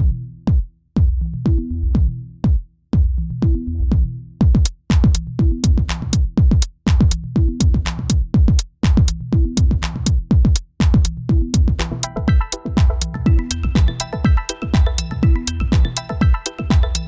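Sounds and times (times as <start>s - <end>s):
electronic dance music: 11.8s - 17.0s.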